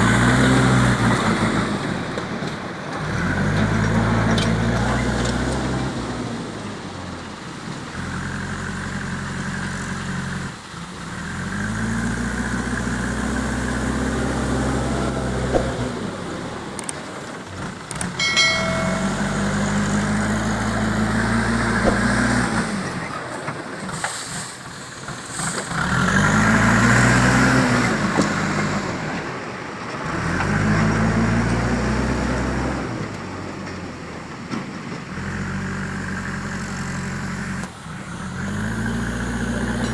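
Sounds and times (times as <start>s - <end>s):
backhoe diesel engine revving: 0.0s - 34.3s, 34.9s - 39.9s
short pitched tone: 18.2s - 20.3s.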